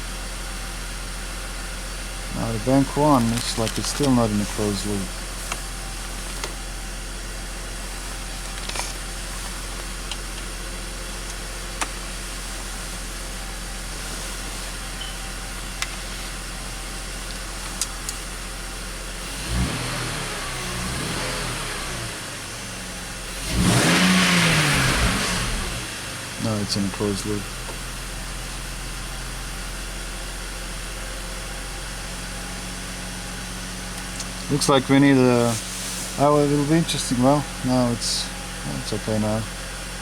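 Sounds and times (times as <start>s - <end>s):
car engine idling: 0.0s - 40.0s
engine revving: 19.2s - 22.5s, 23.1s - 27.7s.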